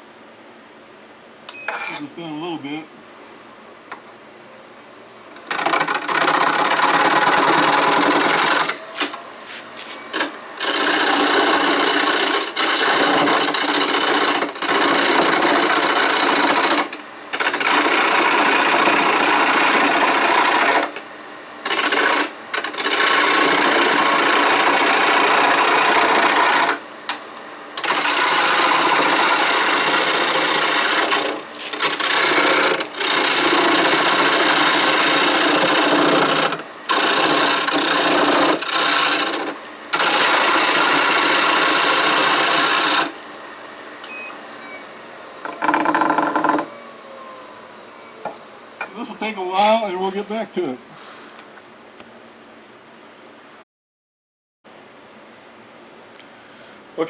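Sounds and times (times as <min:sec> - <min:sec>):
gouge scraping spinning wood: 0:05.5 - 0:08.8, 0:09.5 - 0:21.0, 0:21.6 - 0:26.8, 0:27.8 - 0:43.2.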